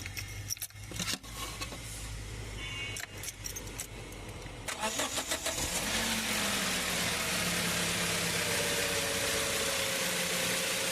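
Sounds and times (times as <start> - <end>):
van engine idling: 4.0 - 10.9
van engine cranking: 4.6 - 10.9.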